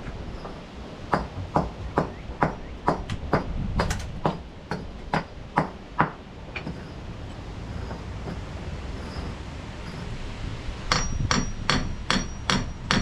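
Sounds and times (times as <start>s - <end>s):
hammer striking: 1.1s - 6.8s, 10.9s - 13.0s.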